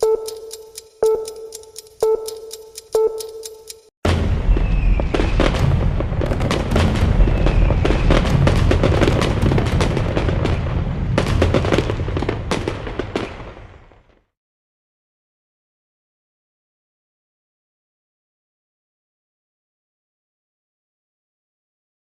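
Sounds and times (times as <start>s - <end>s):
low rumble: 4.1s - 11.7s
fireworks exploding: 4.1s - 14.2s.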